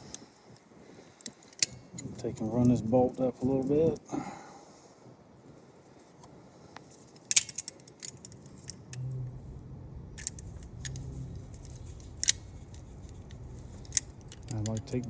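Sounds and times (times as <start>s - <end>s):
metal clicks of hand tools: 1.2s - 2.8s, 7.2s - 9.0s, 10.2s - 15.0s
low hum: 8.2s - 15.0s.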